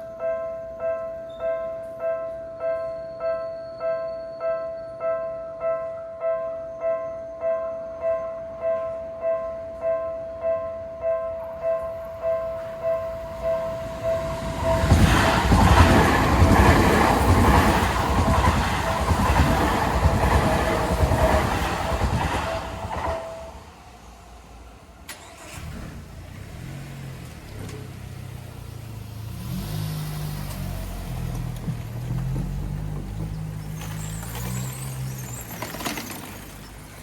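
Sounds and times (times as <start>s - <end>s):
crossing bell ringing: 0.0s - 23.6s, 31.9s - 37.0s
train rumble and wheel clatter: 11.4s - 37.0s.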